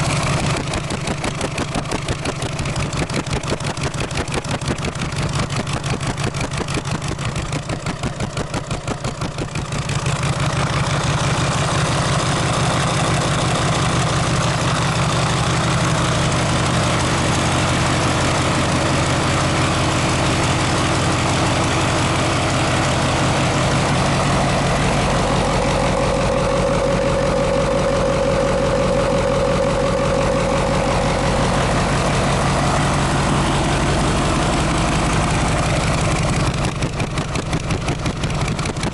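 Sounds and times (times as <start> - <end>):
diesel engine starting and idling: 0.0 - 38.9
steady whine: 11.2 - 38.6.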